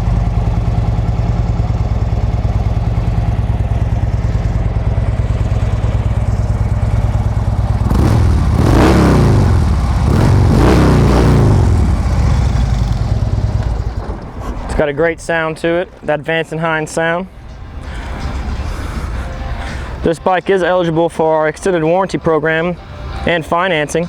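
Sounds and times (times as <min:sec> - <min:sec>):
motorcycle engine revving: 0:00.0 - 0:14.5
motorcycle engine idling: 0:00.0 - 0:14.7.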